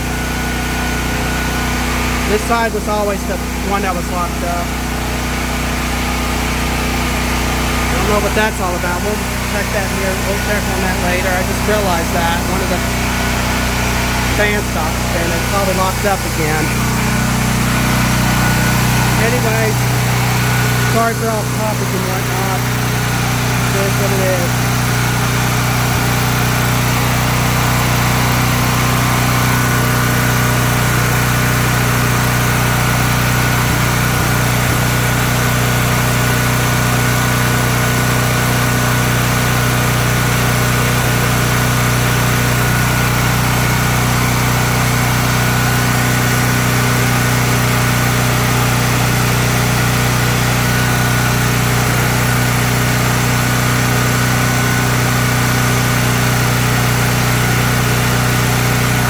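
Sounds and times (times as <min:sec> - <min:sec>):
generator engine running: 0:00.0 - 0:59.0
thin high whine: 0:07.8 - 0:22.9.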